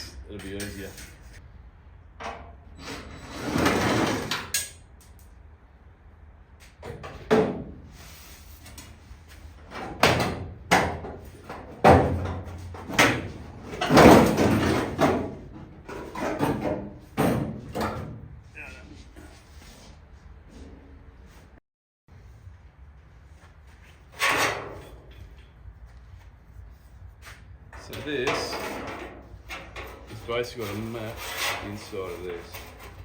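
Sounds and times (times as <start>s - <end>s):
material sliding and scraping: 30.0s - 33.0s.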